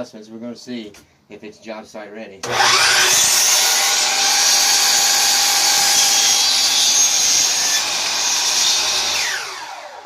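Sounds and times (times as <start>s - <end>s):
miter saw cutting wood: 2.4s - 10.0s.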